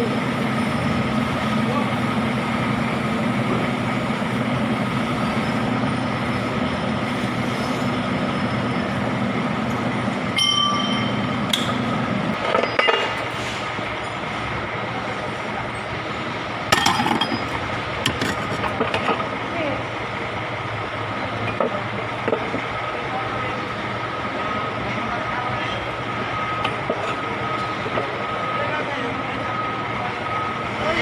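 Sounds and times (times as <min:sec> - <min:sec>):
metal tools clinking: 0:16.8 - 0:18.7.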